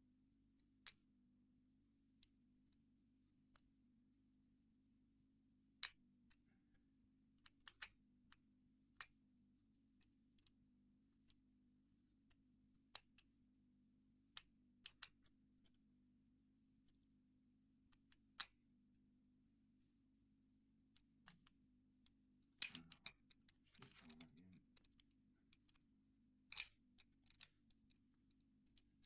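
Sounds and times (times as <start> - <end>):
lock picks clicking in padlock: 26.5 - 27.8.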